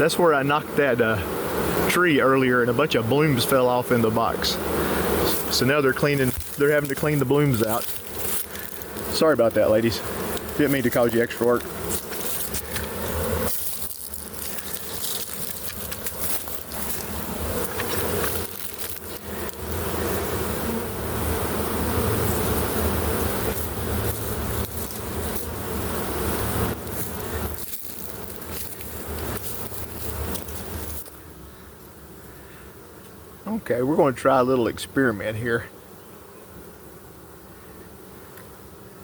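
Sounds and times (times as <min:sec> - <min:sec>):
bee swarm buzzing: 0:00.0 - 0:39.0.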